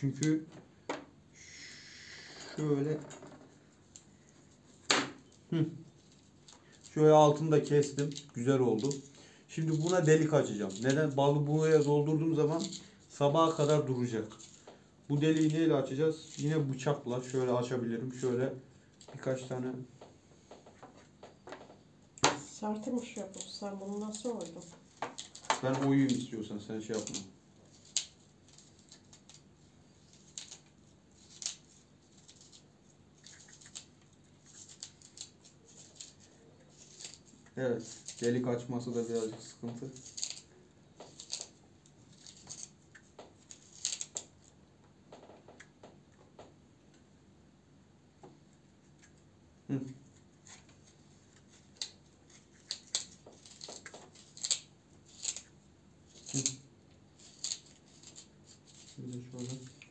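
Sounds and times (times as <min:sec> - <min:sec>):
knife scraping radish: 0:03.7 - 0:19.6, 0:22.6 - 0:44.5, 0:49.8 - 0:59.9
knife crunching into radish: 0:57.2 - 0:59.9.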